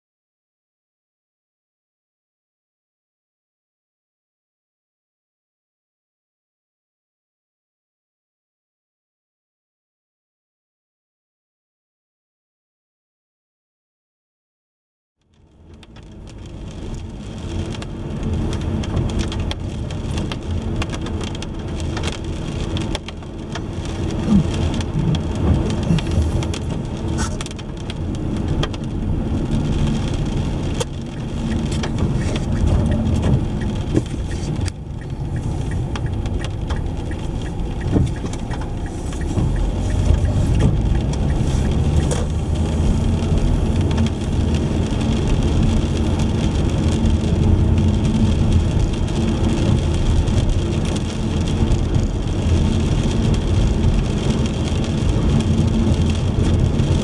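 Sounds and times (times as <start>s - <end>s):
road and engine rumble: 15.2s - 57.0s
rain noise: 15.3s - 57.0s.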